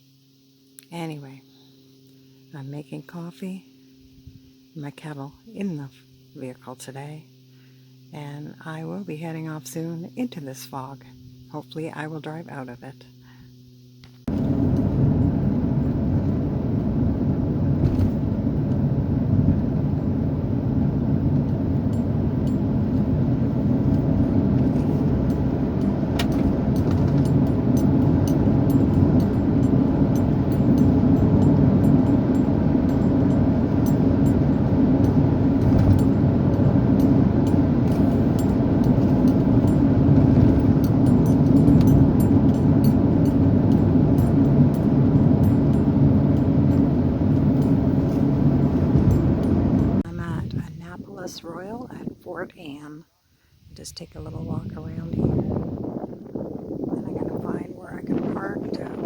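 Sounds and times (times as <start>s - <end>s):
vehicle engine and road noise: 13.5s - 52.8s, 54.0s - 59.0s.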